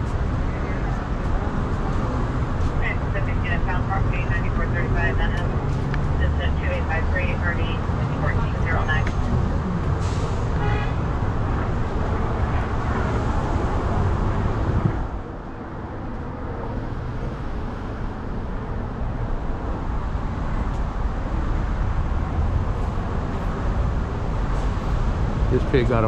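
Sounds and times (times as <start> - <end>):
loud vehicle passing: 0.0 - 26.0
roadway rumble: 0.0 - 26.0.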